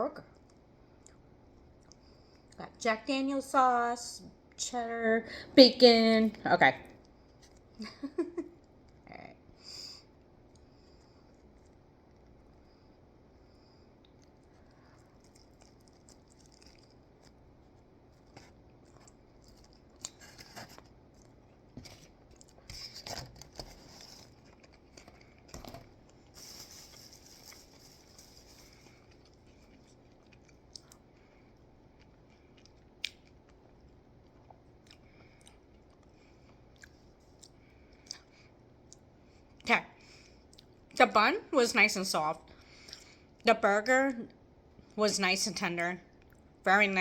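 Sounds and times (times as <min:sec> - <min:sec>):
person chewing food: 0:00.3 - 0:02.6, 0:07.0 - 0:07.8, 0:08.6 - 0:39.6.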